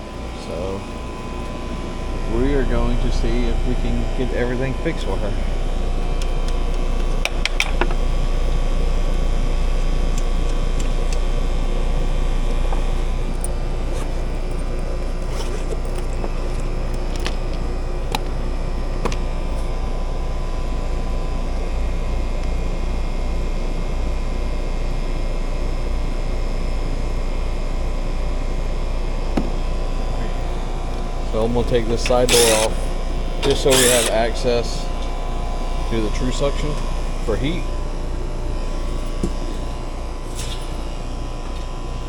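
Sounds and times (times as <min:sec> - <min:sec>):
heat pump low hum: 0:00.0 - 0:42.0.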